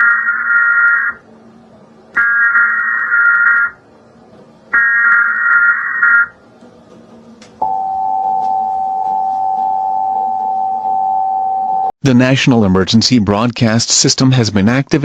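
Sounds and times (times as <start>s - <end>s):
two-tone attention signal: 7.6s - 11.9s.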